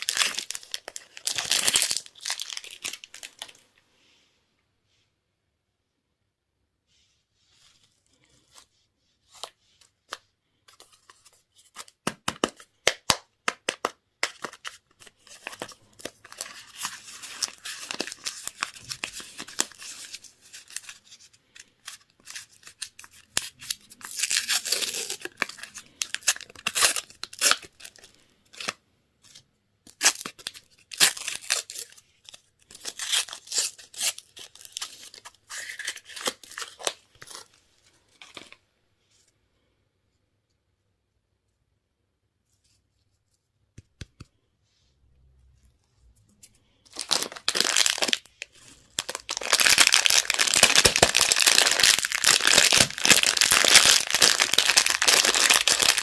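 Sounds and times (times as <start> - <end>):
candy wrappers crinkling: 0.0 - 3.6, 10.1 - 28.8, 29.9 - 38.6, 46.9 - 56.0.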